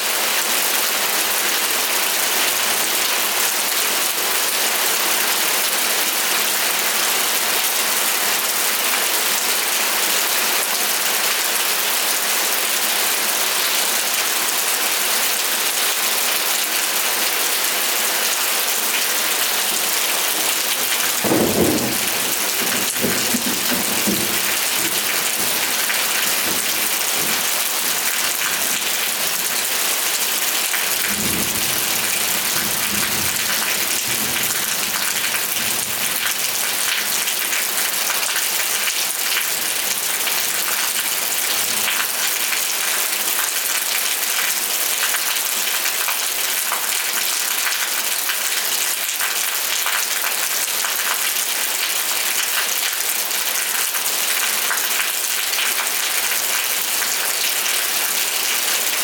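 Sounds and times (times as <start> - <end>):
rain hiss: 12.9 - 42.5.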